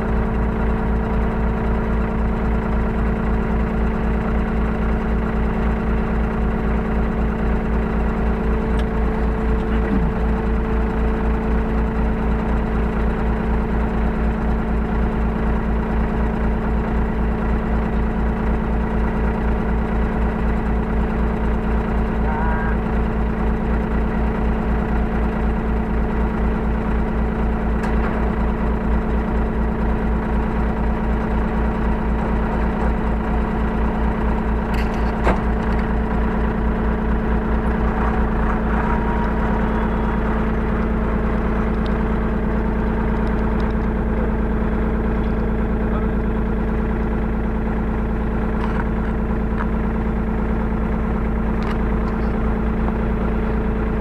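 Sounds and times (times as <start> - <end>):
excavator diesel engine running: 0.0 - 54.0.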